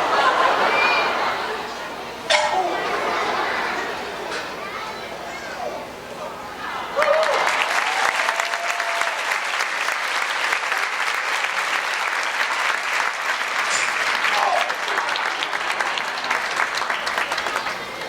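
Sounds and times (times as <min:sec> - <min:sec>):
voices calling out: 0:00.0 - 0:07.0
audience applauding: 0:06.9 - 0:18.0.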